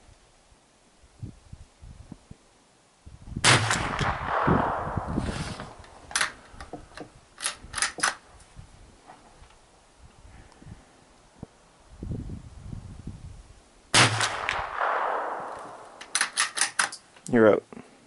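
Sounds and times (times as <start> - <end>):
rifle shot with rolling echo: 3.4 - 6.4, 13.9 - 16.8
rifle bolt clicking: 5.8 - 8.2, 15.5 - 17.0.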